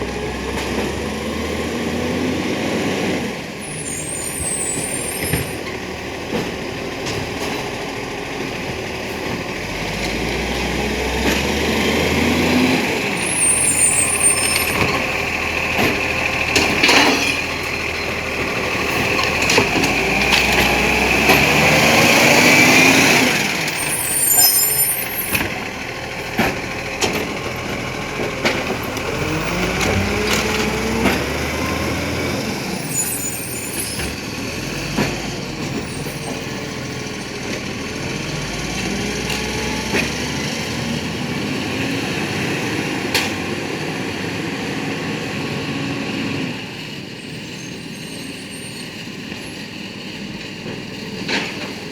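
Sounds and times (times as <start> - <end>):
diesel engine revving: 0.0 - 51.8.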